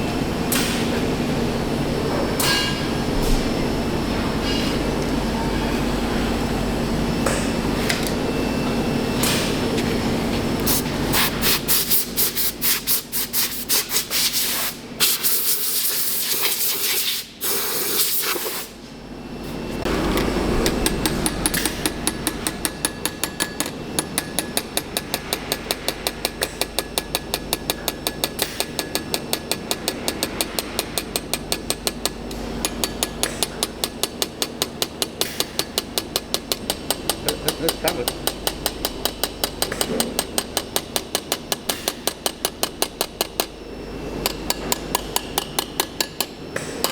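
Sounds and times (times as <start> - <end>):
steady machine hum: 0.0 - 46.9.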